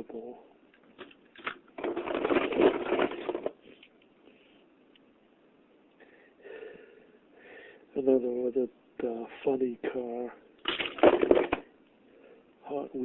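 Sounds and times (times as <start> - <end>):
toy cars clattering: 0.9 - 3.6, 10.6 - 11.7.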